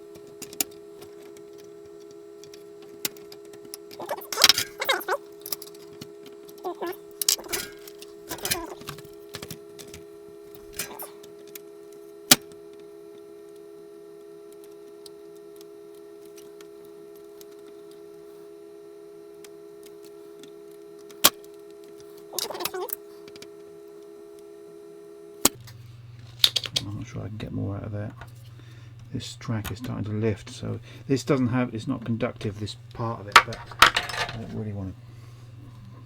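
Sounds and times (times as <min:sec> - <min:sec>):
steady hum: 0:00.0 - 0:36.0
handling and scraping noises: 0:32.4 - 0:34.8.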